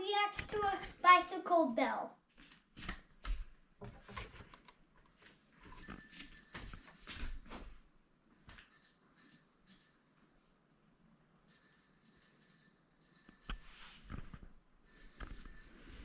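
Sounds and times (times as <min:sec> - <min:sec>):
soft knocks and rustles: 0:02.4 - 0:04.6
bicycle bell ringing: 0:08.7 - 0:10.0, 0:11.5 - 0:13.5, 0:14.9 - 0:16.0.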